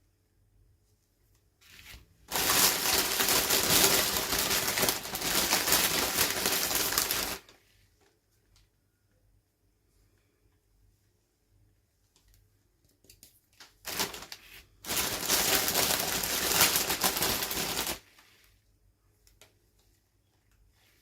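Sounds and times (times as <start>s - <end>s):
wrapper crinkling and tearing: 1.6s - 7.5s, 13.6s - 18.2s.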